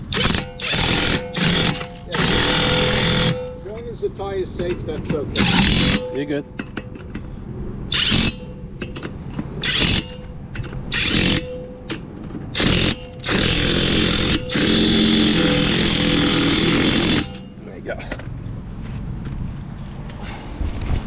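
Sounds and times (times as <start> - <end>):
impact wrench hammering: 0.0 - 3.8, 4.6 - 7.3, 7.9 - 17.6.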